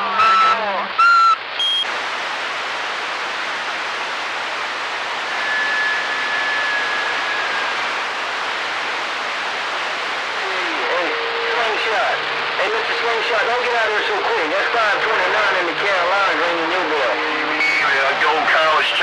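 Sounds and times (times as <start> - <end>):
radio static hiss: 0.0 - 19.0
faint carrier whistle: 0.2 - 1.9.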